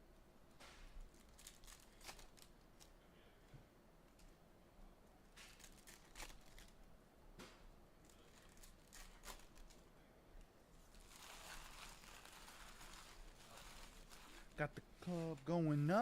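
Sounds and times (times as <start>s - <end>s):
wrapper crinkling: 1.0s - 3.0s, 5.4s - 6.8s, 8.0s - 9.8s, 10.9s - 16.0s
wrapper tearing open: 1.1s - 2.9s, 5.4s - 6.8s, 8.1s - 9.8s, 11.0s - 14.4s.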